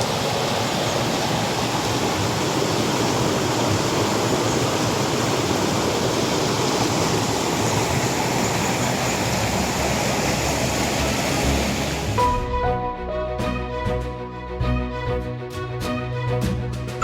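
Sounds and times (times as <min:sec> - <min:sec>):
waterfall roaring: 0:00.0 - 0:12.2.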